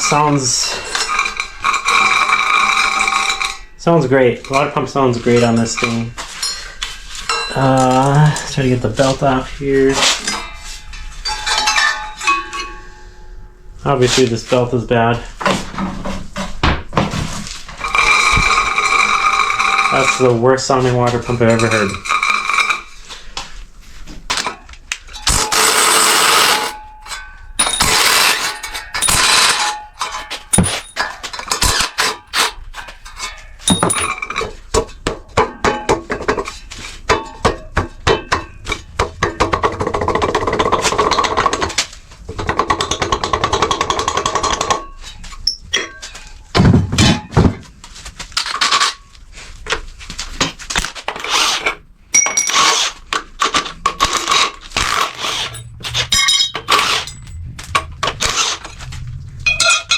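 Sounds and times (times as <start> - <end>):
metal clinks and knocks: 5.4 - 8.1, 10.1 - 13.7, 24.4 - 41.7, 52.1 - 52.8, 53.4 - 58.6, 59.4 - 59.9.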